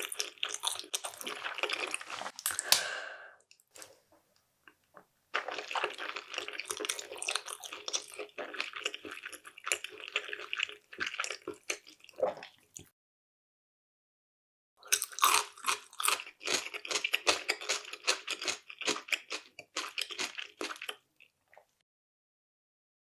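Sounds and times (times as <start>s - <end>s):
wet chewing: 0.0s - 3.0s, 4.7s - 12.9s, 14.9s - 21.6s.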